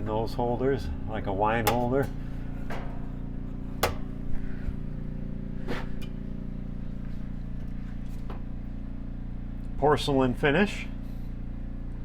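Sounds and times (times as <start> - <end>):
steady low hum: 0.0 - 12.0
short sharp clicks and knocks: 1.6 - 3.0, 3.8 - 4.1.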